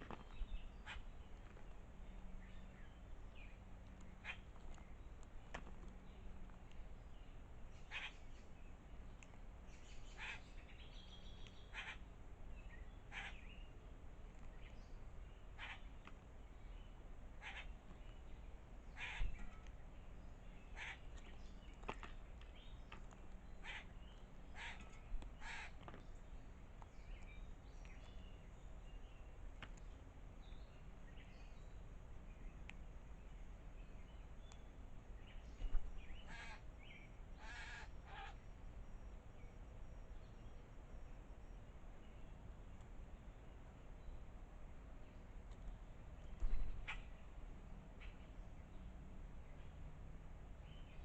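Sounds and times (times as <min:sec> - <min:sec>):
low background hum: 0:00.0 - 0:51.0
bird calling: 0:07.8 - 0:08.4, 0:09.8 - 0:12.1, 0:13.0 - 0:13.6, 0:15.5 - 0:16.1, 0:17.4 - 0:17.9, 0:18.9 - 0:19.7, 0:20.5 - 0:22.8, 0:23.4 - 0:26.0, 0:35.3 - 0:38.4, 0:46.4 - 0:47.3.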